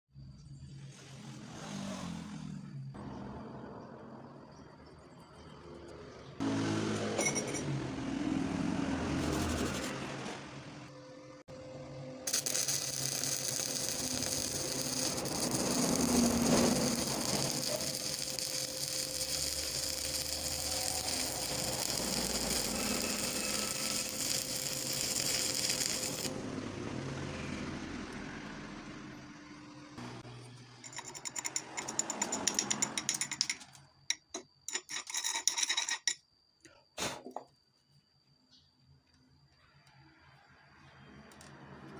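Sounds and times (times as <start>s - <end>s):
welding arc crackling and hissing: 12.3s - 26.3s.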